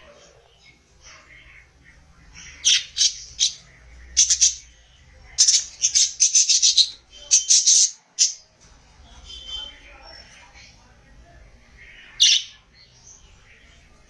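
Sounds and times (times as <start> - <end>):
budgerigars chirping and squawking: 1.1 - 8.4, 11.8 - 13.2.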